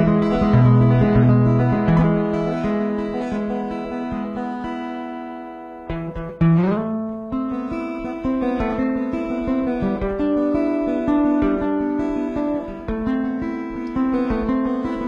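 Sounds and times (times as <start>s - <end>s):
guitar plucked and strummed: 0.0s - 15.0s.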